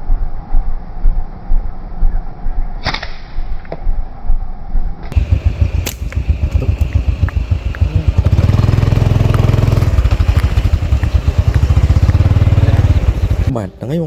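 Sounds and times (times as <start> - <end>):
small engine running: 5.1 - 13.5.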